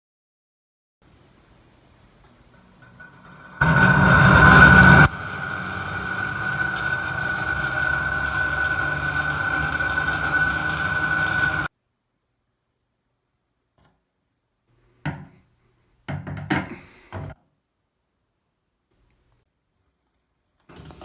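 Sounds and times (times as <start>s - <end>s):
high fan whine: 1.1s - 11.7s
exhaust fan humming: 1.2s - 11.7s.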